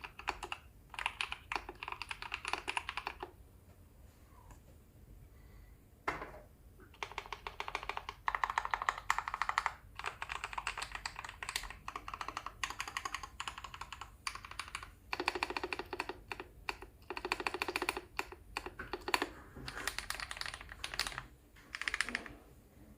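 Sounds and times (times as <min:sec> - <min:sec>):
typing on mechanical keyboard: 0:00.0 - 0:03.3, 0:06.9 - 0:22.4.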